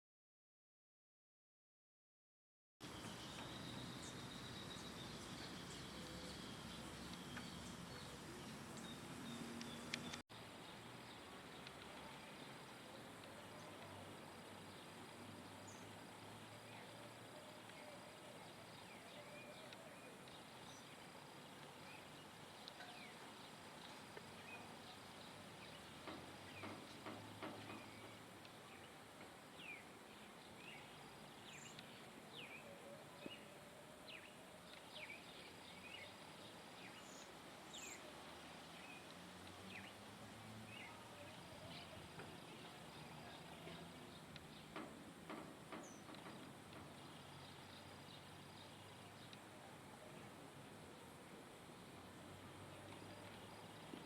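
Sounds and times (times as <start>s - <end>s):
faint bird chirps: 2.8s - 40.0s
background hiss: 2.8s - 54.0s.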